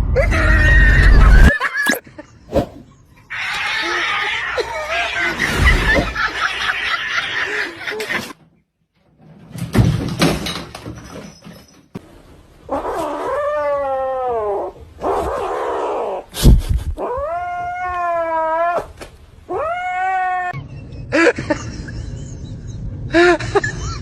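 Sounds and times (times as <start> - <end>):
cat yowling: 19.5 - 20.6.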